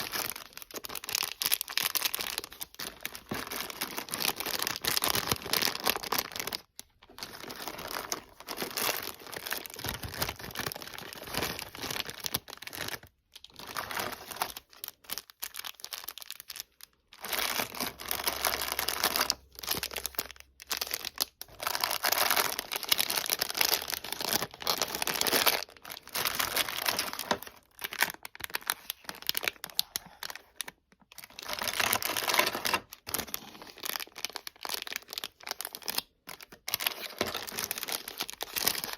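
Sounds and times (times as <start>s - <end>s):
packaging crinkling and tearing: 0.0s - 38.9s.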